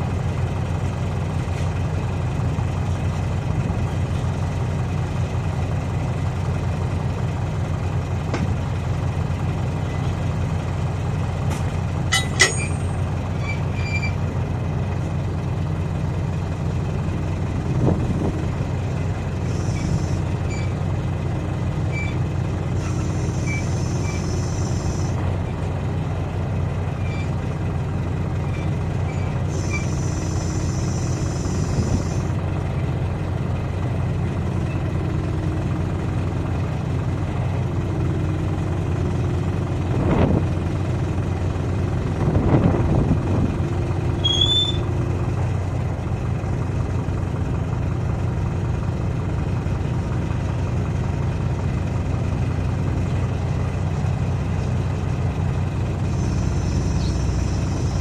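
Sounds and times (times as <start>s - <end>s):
large engine idling: 0.0s - 58.0s
sharp metallic clank: 12.1s - 13.0s.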